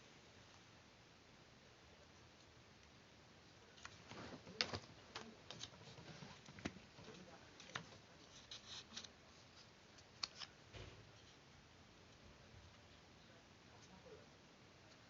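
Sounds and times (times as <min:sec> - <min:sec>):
craft tools clicking and snipping paper: 0:03.8 - 0:10.5.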